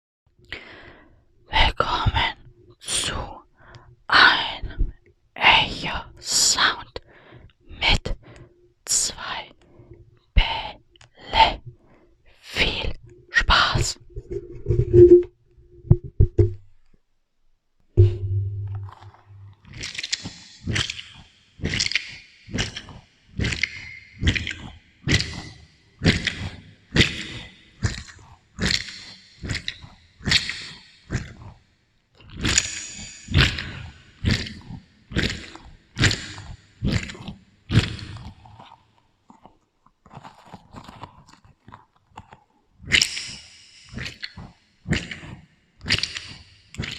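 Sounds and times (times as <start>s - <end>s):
low hum: 18.0s - 19.6s
wet fruit sounds with echo: 18.0s - 31.5s, 32.2s - 38.4s
wet squishy crackle: 18.9s - 31.6s, 32.2s - 45.2s, 45.8s - 46.9s
soft chewing: 33.4s - 42.8s.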